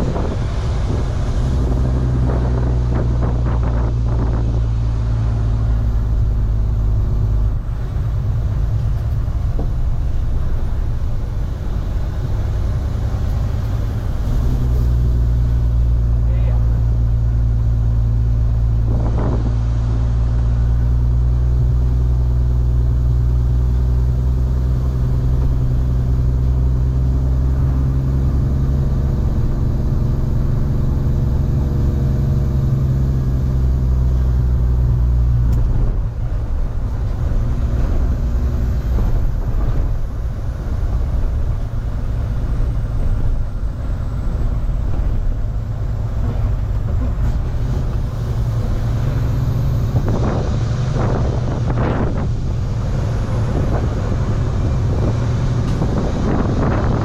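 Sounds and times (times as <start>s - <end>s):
diesel truck engine running: 0.0s - 57.0s.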